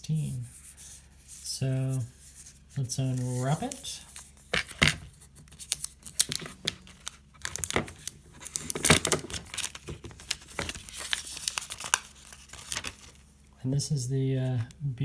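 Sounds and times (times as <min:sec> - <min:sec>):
wrapping paper tearing and crumpling: 0:03.1 - 0:13.4.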